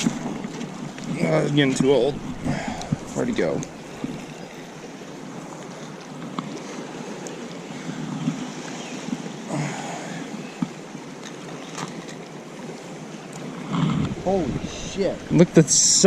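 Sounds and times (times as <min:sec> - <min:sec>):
wind on microphone: 0:00.0 - 0:05.5, 0:13.4 - 0:16.0
river water flowing: 0:00.0 - 0:16.0.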